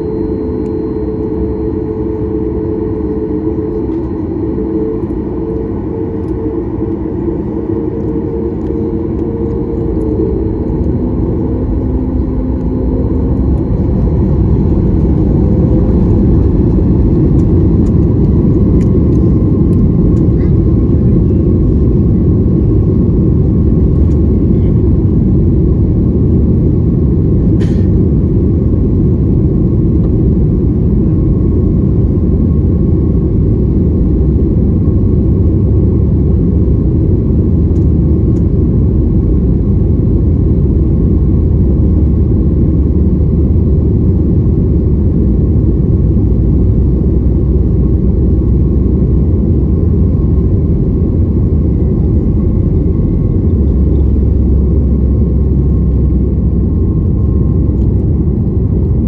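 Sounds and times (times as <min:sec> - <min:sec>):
airliner engines and airflow rumble: 0:00.0 - 0:59.0
faint steady hum: 0:00.0 - 0:59.0.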